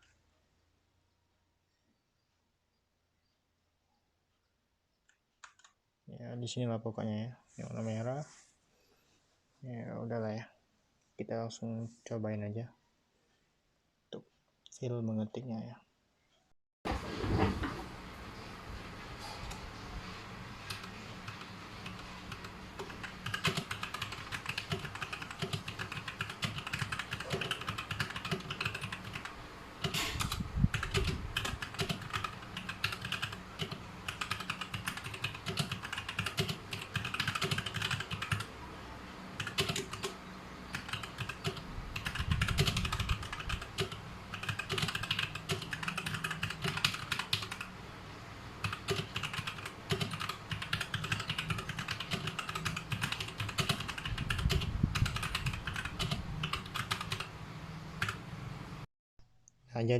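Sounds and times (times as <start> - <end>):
mechanical keyboard typing: 20.6 - 38.5, 39.4 - 47.7, 48.6 - 57.3, 58.0 - 58.2.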